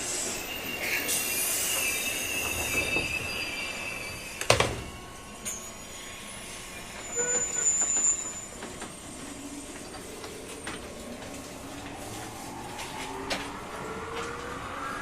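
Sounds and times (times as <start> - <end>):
high wheel squeal: 0.0 - 9.4
rail-joint clicks: 4.4 - 5.7.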